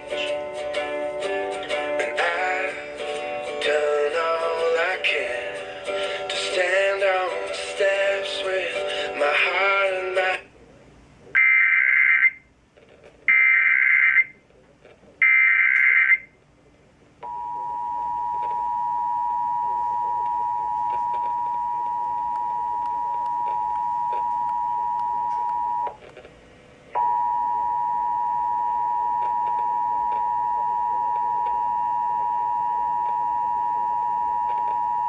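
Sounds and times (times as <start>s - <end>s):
screeching digital data bursts: 13.3s - 14.3s, 15.2s - 16.3s
two-tone attention signal: 17.2s - 26.0s, 27.0s - 35.0s.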